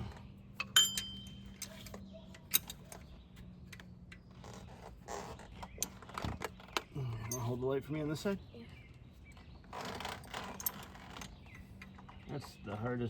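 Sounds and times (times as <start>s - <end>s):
hand tools clinking on metal: 0.6s - 3.1s, 7.0s - 7.6s.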